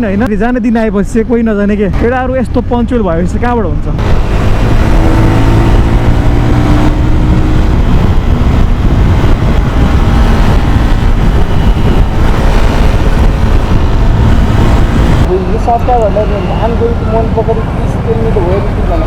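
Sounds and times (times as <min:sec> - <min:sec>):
wind buffeting microphone: 0:03.4 - 0:17.9
motorcycle engine running: 0:04.0 - 0:15.3.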